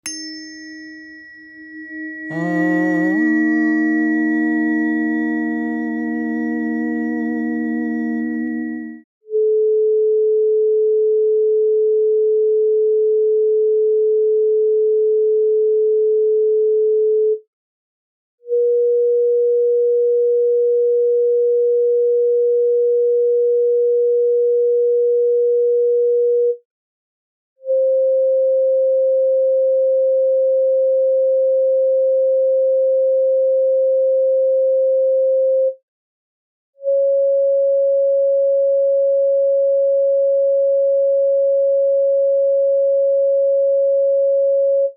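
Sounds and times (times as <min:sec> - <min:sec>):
electronic sine-wave tones: 0:01.0 - 0:13.7, 0:36.8 - 0:44.9.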